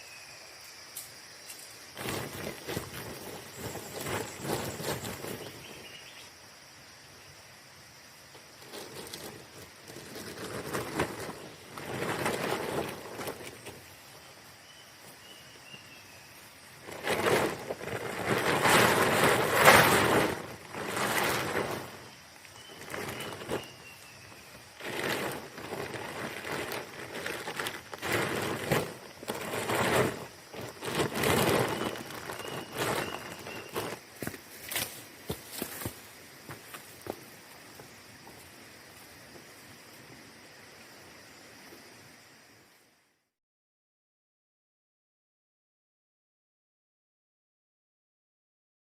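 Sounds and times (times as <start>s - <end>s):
faint bird chirps: 0.0s - 1.8s
high insect hum: 0.0s - 43.4s
rustling and scraping: 1.0s - 6.1s, 8.4s - 14.3s, 16.5s - 38.5s.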